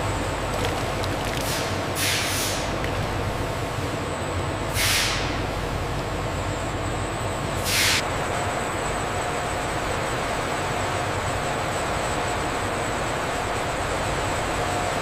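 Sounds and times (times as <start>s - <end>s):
factory machinery noise: 0.0s - 15.0s.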